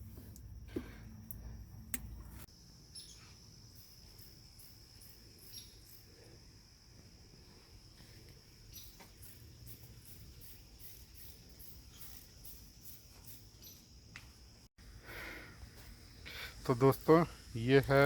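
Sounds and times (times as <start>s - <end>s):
insects trilling: 0.0s - 18.0s.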